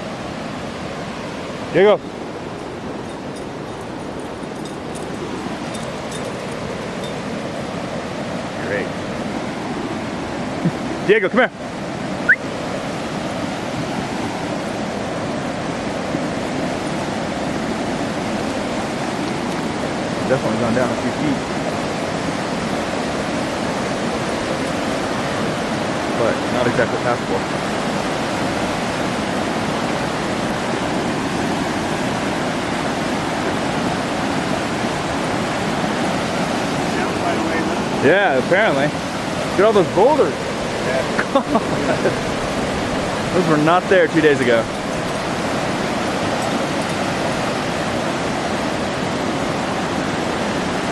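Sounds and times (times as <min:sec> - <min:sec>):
flood water rushing: 0:00.0 - 0:50.9
rising whistle: 0:12.2 - 0:12.5.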